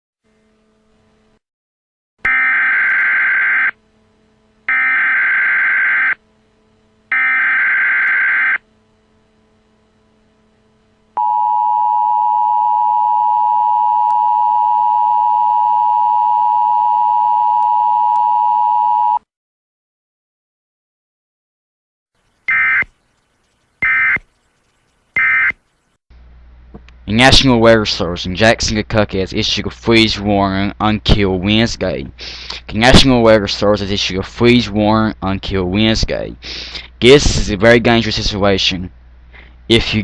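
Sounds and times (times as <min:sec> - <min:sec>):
warbling data tones: 0:22.4 - 0:26.0.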